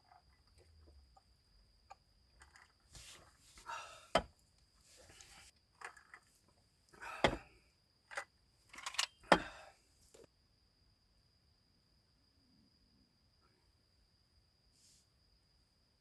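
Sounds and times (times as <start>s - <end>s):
objects rustling and clattering: 2.4s - 6.5s.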